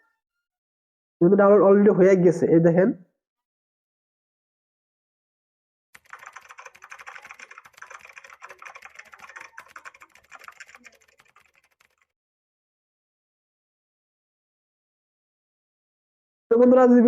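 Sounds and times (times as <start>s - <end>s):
rapid keyboard typing: 6.0s - 12.1s.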